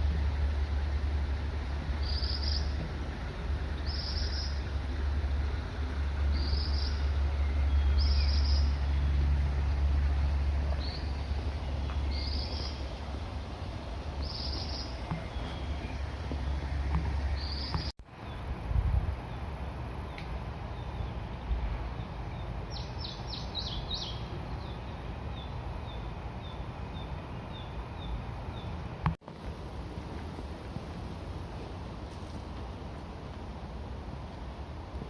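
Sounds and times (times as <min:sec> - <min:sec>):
flowing water: 0:00.0 - 0:18.2
wind rumble on microphone: 0:00.0 - 0:19.9.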